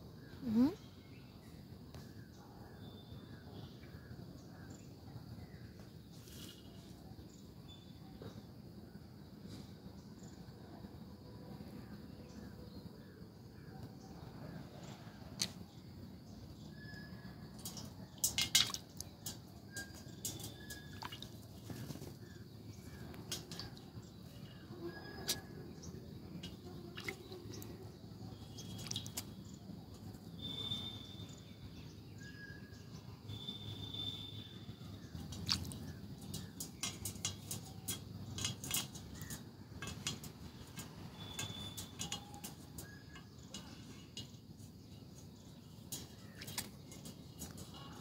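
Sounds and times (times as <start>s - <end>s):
water splashing: 20.3s - 21.8s, 26.4s - 27.7s, 28.5s - 29.3s, 35.2s - 37.3s.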